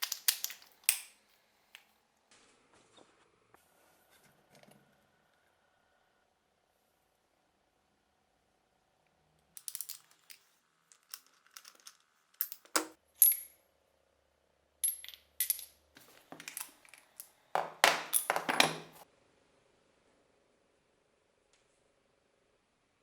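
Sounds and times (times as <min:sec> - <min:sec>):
metal nail gun parts clinking: 0:00.0 - 0:01.2, 0:09.6 - 0:13.5, 0:14.8 - 0:19.0.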